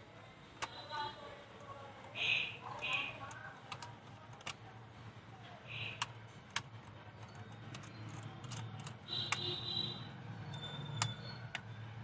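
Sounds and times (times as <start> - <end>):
plastic parts clicking and tapping: 1.6 - 4.7, 5.9 - 9.6.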